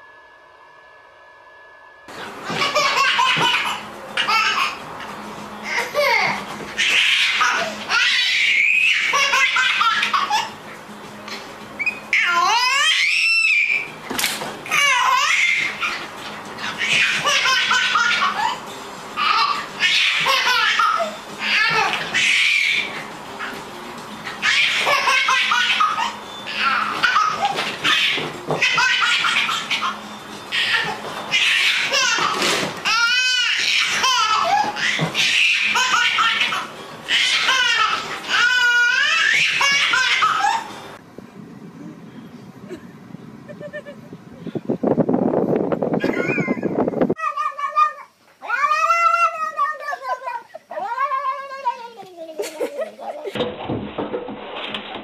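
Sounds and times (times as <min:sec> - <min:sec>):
high-pitched squealing laughter: 0:05.7 - 0:10.6, 0:14.7 - 0:18.6, 0:19.2 - 0:23.6, 0:24.4 - 0:40.8, 0:42.7 - 0:44.2, 0:46.0 - 0:53.4
young child laughing: 0:42.6 - 0:44.2, 0:46.0 - 0:47.2, 0:49.6 - 0:51.1, 0:51.9 - 0:53.4.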